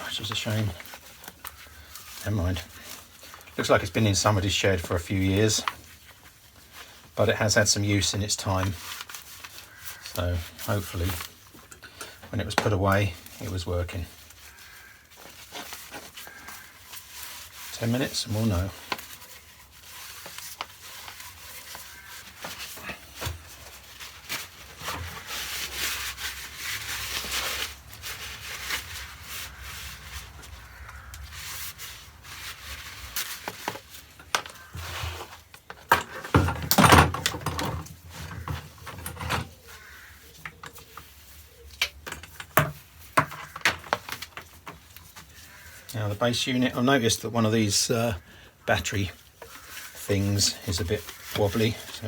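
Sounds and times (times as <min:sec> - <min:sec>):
cloth rubbing on plastic: 0:12.4 - 0:35.5, 0:48.8 - 0:52.0
clatter of parts handled: 0:33.2 - 0:39.6, 0:41.8 - 0:45.1.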